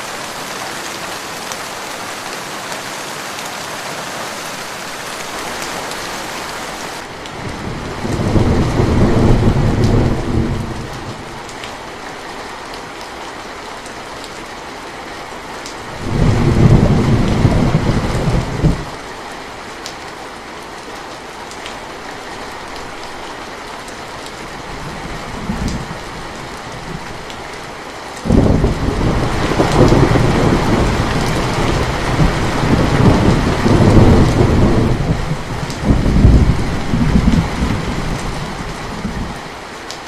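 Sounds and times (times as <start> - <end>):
steady rain: 0.0 - 40.0
low rolls of thunder: 7.4 - 11.3, 16.0 - 18.9, 28.3 - 39.4.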